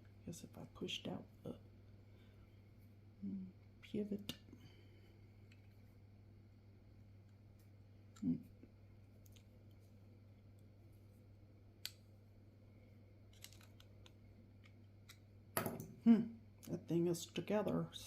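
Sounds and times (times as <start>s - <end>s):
steady low hum: 0.0s - 18.0s
small metal parts clicking: 13.3s - 14.1s.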